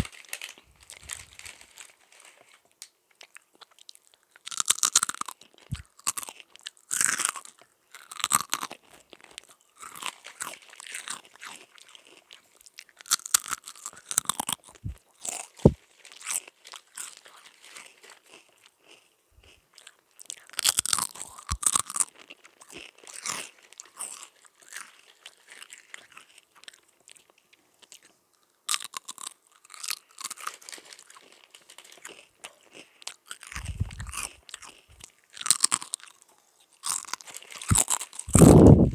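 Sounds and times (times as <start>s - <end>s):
mouth chewing crunchy crisps: 0.0s - 2.5s, 3.1s - 38.9s
low thump: 33.6s - 34.2s.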